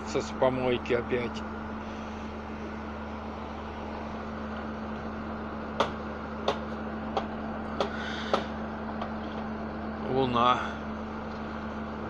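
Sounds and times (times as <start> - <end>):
tracked vehicle engine idling: 0.0 - 12.0
sharp knocks: 5.8 - 9.1.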